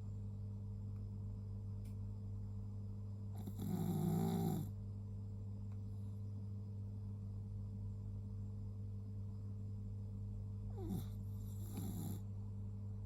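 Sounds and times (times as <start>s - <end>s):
steady low hum: 0.0s - 13.0s
loud rasping snore: 3.4s - 4.7s, 10.8s - 12.2s.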